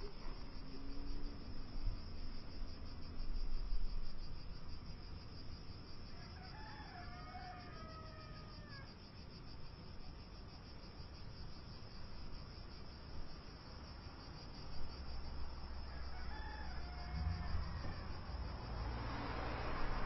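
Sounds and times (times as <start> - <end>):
rooster crowing: 6.1 - 8.9, 15.8 - 20.0
insect chirring: 11.6 - 20.0
low rumble: 17.1 - 20.0.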